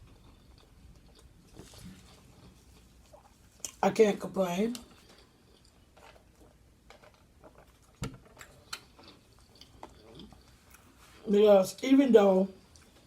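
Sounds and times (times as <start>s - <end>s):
person chewing: 0.0s - 3.8s, 4.7s - 11.3s.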